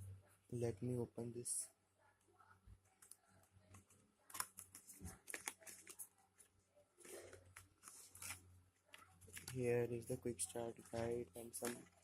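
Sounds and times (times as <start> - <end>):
paper rustling and crinkling: 4.3 - 6.1, 7.0 - 9.7.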